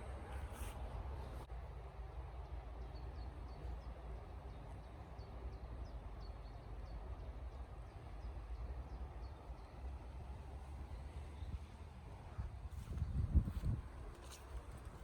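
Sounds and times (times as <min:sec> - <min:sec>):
wind rumble on microphone: 0:11.4 - 0:15.0.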